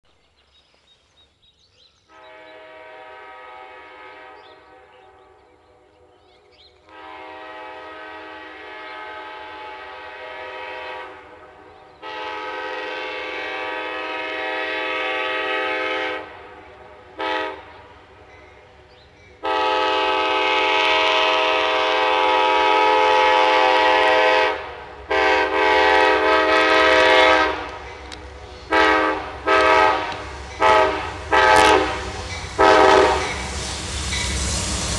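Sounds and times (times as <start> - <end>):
diesel locomotive horn chord: 2.1 - 18.7, 19.4 - 33.4.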